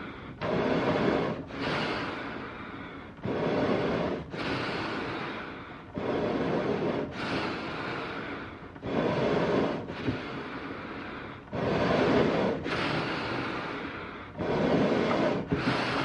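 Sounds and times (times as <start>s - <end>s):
heavy animal breathing: 0.0s - 16.0s.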